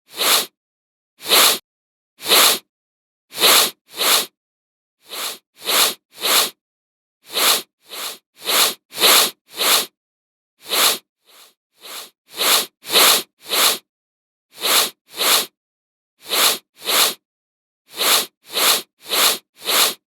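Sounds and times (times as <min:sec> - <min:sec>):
man sniffing: 0:00.1 - 0:00.5, 0:01.2 - 0:01.6, 0:02.2 - 0:02.6, 0:03.3 - 0:04.3, 0:05.0 - 0:06.6, 0:07.3 - 0:09.9, 0:10.6 - 0:13.8, 0:14.6 - 0:15.5, 0:16.2 - 0:17.2, 0:17.9 - 0:20.0.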